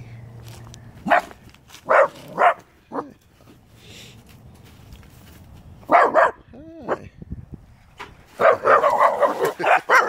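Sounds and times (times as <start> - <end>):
small dog barking: 1.0 - 3.2, 5.9 - 7.0, 8.4 - 10.0.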